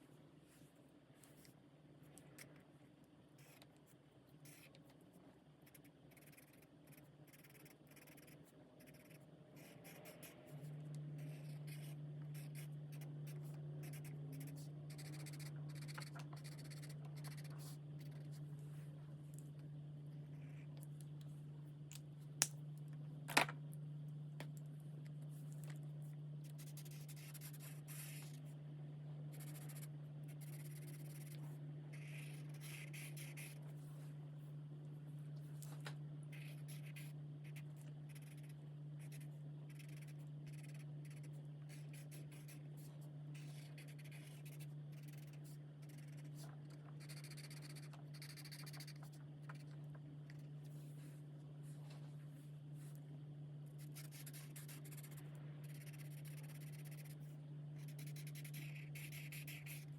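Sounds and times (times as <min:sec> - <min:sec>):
steady low hum: 0:00.0 - 0:59.9
marker scratching on paper: 0:05.6 - 0:10.3, 0:11.2 - 0:18.4, 0:26.5 - 0:28.4, 0:29.3 - 0:33.6, 0:36.3 - 0:42.7, 0:43.4 - 0:49.6, 0:53.8 - 0:57.2, 0:57.8 - 0:59.9.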